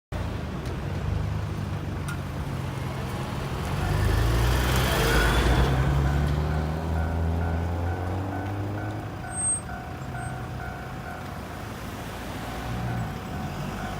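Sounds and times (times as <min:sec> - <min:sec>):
road vehicles engine hum: 0:00.1 - 0:13.9
vehicle passing: 0:01.0 - 0:13.9.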